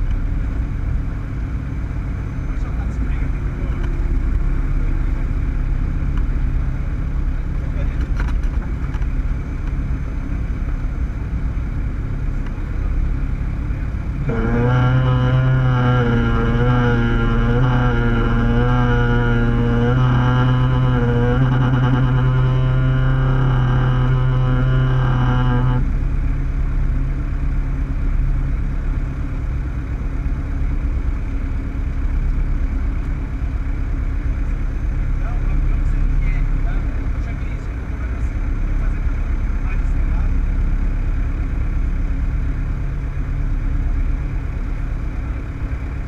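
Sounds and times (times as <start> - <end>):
droning hum with overtones: 0.0 - 46.0
small plane engine and propeller: 0.0 - 46.0
buzzing horn tone: 14.0 - 26.4.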